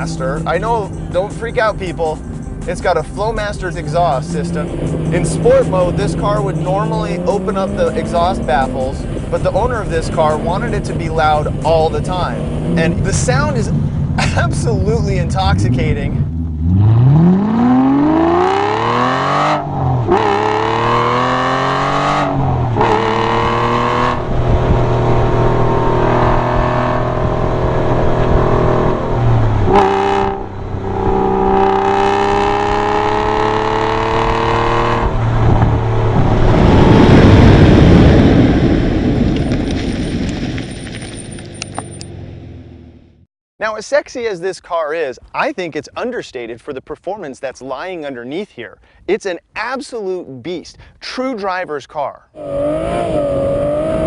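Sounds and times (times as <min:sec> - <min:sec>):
car engine accelerating through gears: 0:00.0 - 0:14.4, 0:15.1 - 0:39.5, 0:52.4 - 0:54.0
loud rushing noise: 0:22.4 - 0:40.4.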